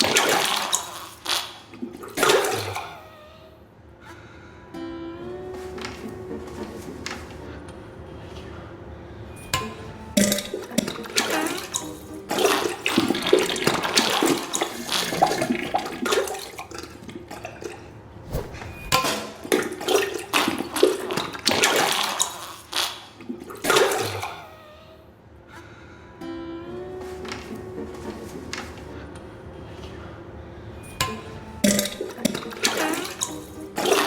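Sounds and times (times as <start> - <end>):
wet spluttering into toilet water: 0.0 - 2.8, 10.2 - 17.8, 19.0 - 24.3, 31.7 - 34.0.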